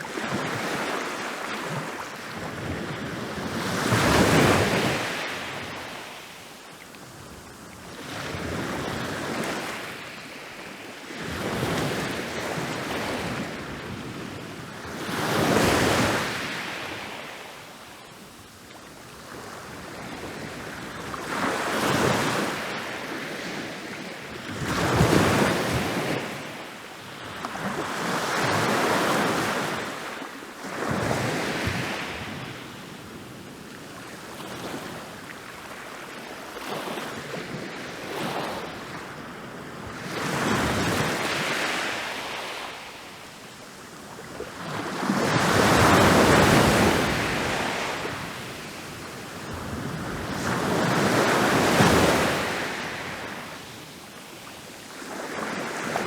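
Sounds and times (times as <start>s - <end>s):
ocean waves breaking on beach: 34.0s - 56.0s.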